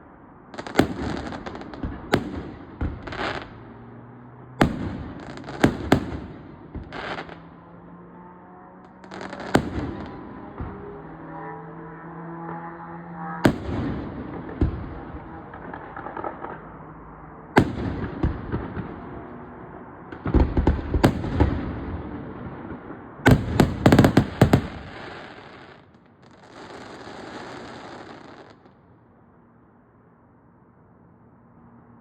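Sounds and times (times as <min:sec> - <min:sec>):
fireworks bangs and crackle: 0:00.5 - 0:04.0, 0:04.6 - 0:07.6, 0:08.8 - 0:11.2, 0:13.4 - 0:28.8.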